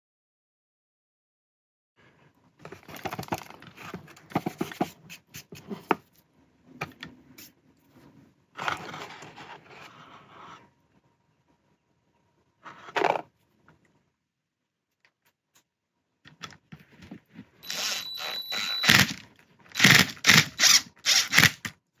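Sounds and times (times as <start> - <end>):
hard parts and tools clicking: 17.6 - 21.8.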